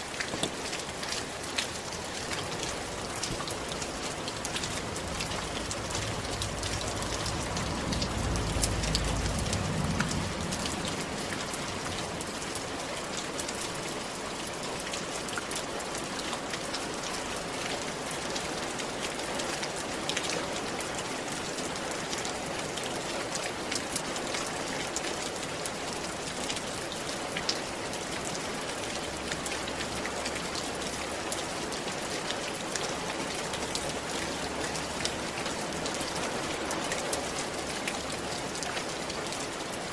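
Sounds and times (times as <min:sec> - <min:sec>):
rain falling on a roof: 0:00.0 - 0:39.9
low rumble: 0:04.6 - 0:12.3.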